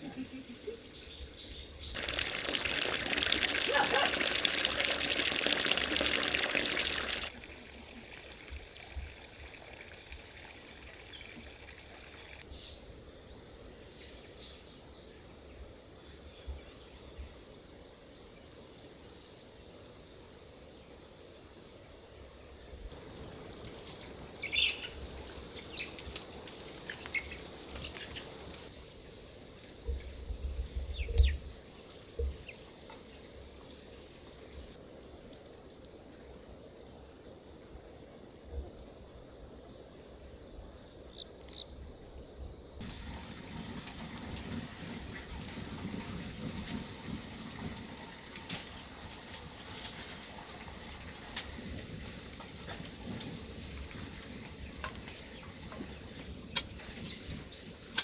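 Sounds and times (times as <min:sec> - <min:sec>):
insect chorus drone: 0:00.0 - 0:58.0
running water: 0:01.9 - 0:12.4, 0:42.8 - 0:57.5.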